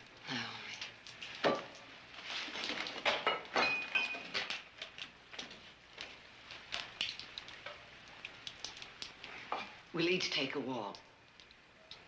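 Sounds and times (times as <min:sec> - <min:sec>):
small knocks and scrapes: 0:01.1 - 0:07.8.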